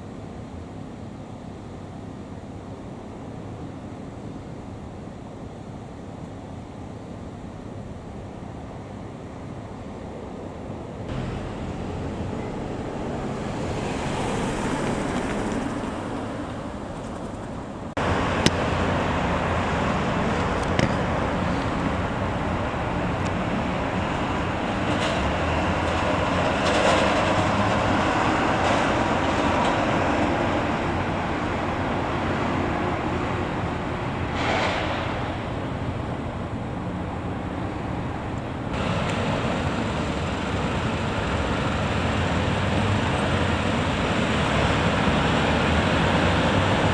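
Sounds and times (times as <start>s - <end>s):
road traffic rushing: 9.5s - 46.9s.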